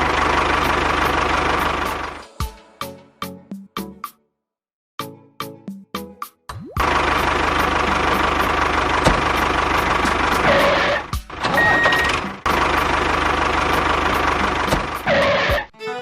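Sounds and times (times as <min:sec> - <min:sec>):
engine running with ticking: 0:00.0 - 0:02.2, 0:06.8 - 0:15.7.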